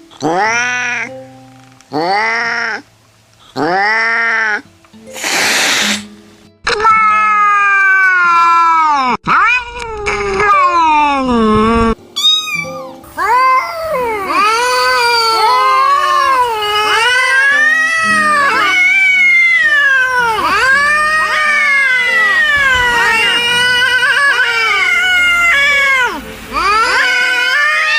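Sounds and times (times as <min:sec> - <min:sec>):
angry cats yowling: 0:12.2 - 0:27.9.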